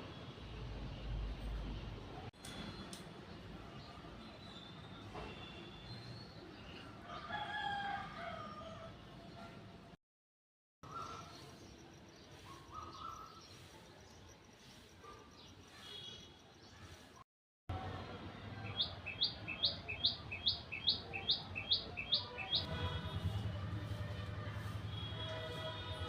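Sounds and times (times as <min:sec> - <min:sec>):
birds chirping: 0:18.6 - 0:23.0.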